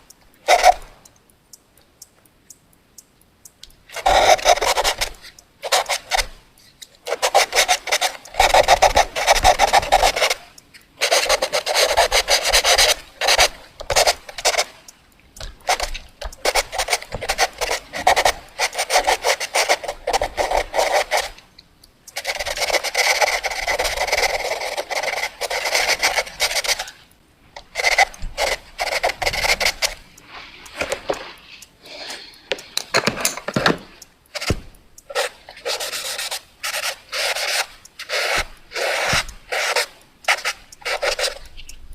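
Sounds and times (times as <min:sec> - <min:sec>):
pencil sketching on paper: 0:04.0 - 0:06.3, 0:07.1 - 0:10.4, 0:11.0 - 0:14.7, 0:15.6 - 0:21.4, 0:22.2 - 0:26.9, 0:27.8 - 0:30.0, 0:34.4 - 0:41.5.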